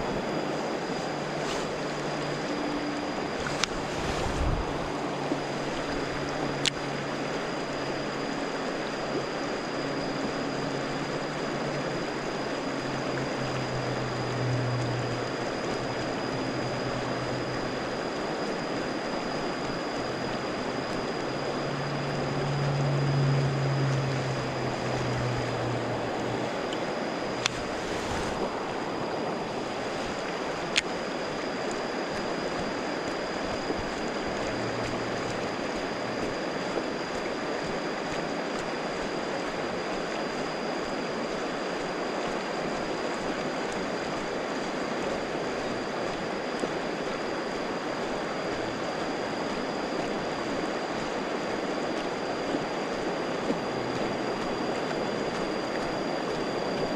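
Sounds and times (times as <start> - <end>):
thin high tone: 0.0 - 36.7
river water rushing: 0.0 - 56.9.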